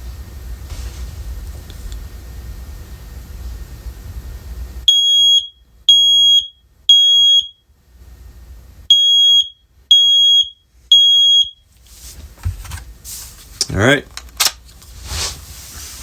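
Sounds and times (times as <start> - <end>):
smoke alarm beeps: 4.8 - 7.7, 8.9 - 11.7.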